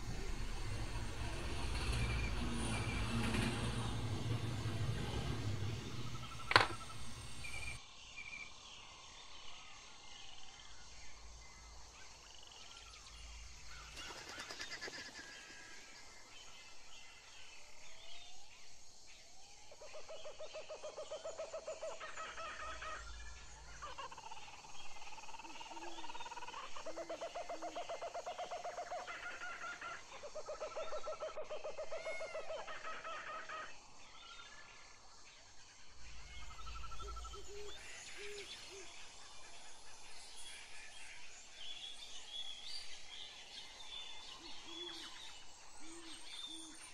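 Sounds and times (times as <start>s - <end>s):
birds chirping and singing: 0.0s - 7.8s, 35.4s - 46.9s.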